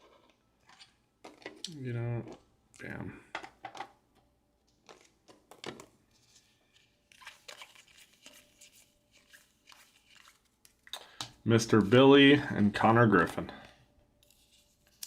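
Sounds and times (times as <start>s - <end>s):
card pack wrappers crinkling: 6.7s - 11.2s.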